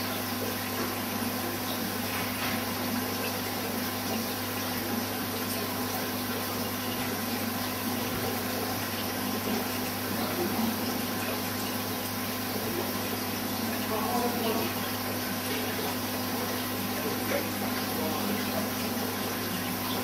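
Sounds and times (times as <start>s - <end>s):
aquarium filter pump and water: 0.0s - 20.0s
low electrical hum: 0.0s - 20.0s.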